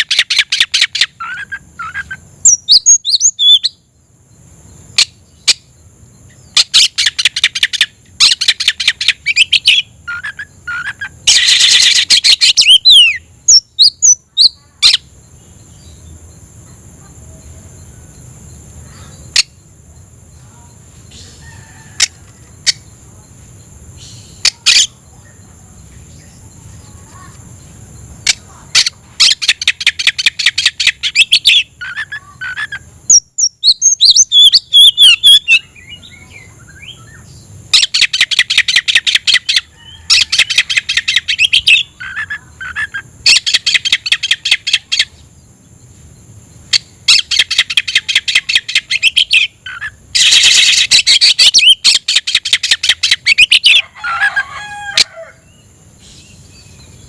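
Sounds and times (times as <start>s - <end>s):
bird gliding whistles: 29.2s - 45.2s.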